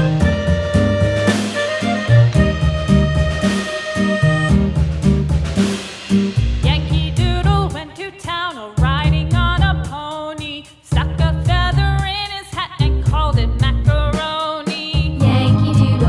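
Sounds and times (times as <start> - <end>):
sung melody over bass beat: 0.0 - 7.7, 15.1 - 16.0.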